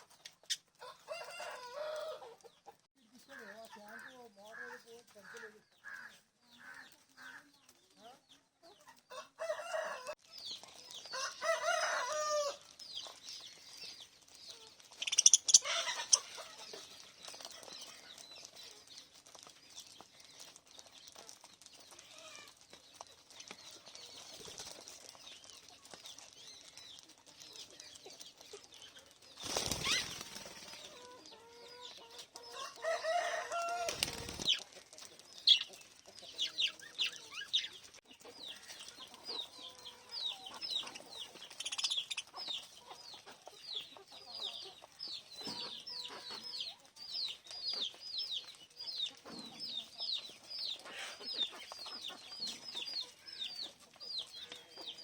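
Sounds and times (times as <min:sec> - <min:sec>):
parrots chirping and squawking: 0:13.0 - 0:18.0, 0:29.6 - 0:31.1, 0:40.8 - 0:42.7
wing flapping: 0:29.4 - 0:30.9, 0:33.7 - 0:34.8.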